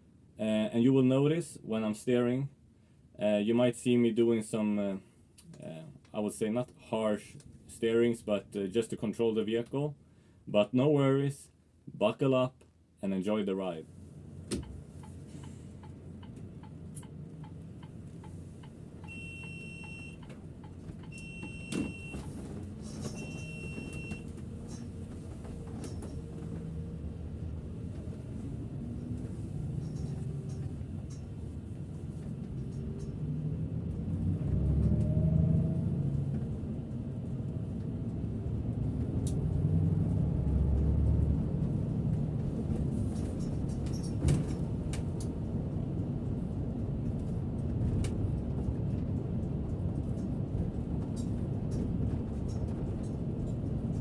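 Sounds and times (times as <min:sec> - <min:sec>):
bus engine and road rumble: 0:00.0 - 0:54.0
short electronic beeps: 0:19.0 - 0:20.2, 0:21.1 - 0:22.2, 0:23.2 - 0:24.3.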